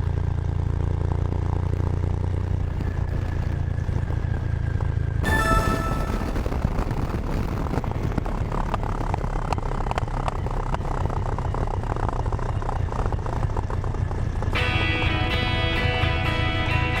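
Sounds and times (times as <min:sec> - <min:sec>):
motorcycle engine: 0:00.0 - 0:17.0
wind noise on microphone: 0:05.2 - 0:11.9.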